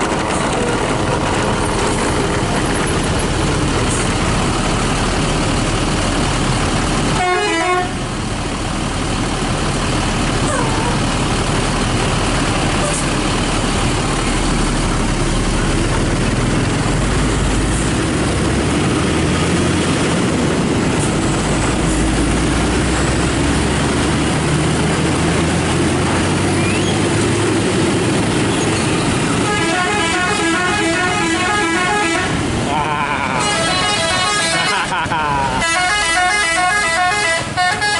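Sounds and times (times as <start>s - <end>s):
bus engines running: 0.0s - 37.9s
multi-tone horn tune: 7.2s - 8.0s, 29.4s - 32.4s, 33.4s - 34.9s, 35.6s - 37.9s.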